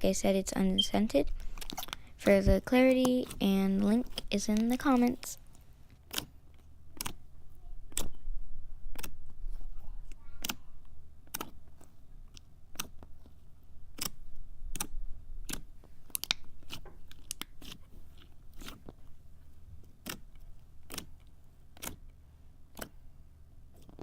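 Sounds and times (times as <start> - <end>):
slime popping and clicking: 13.9 - 17.5.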